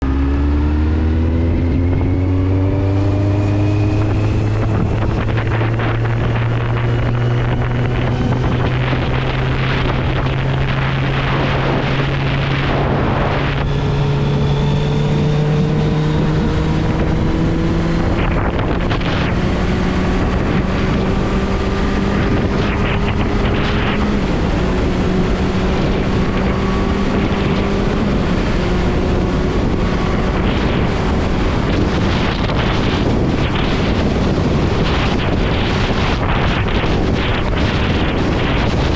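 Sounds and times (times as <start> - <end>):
motorcycle engine under way: 0.0 - 38.9
wind rushing over camera: 0.0 - 38.9.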